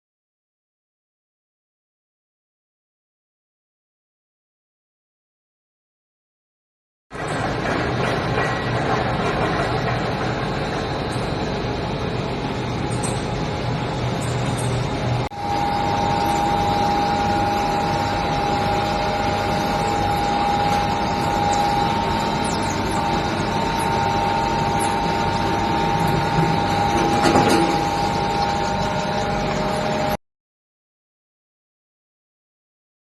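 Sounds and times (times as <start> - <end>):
briquette machine running: 7.1 - 30.2
machine clatter: 7.1 - 30.2
machine whine: 7.1 - 30.2.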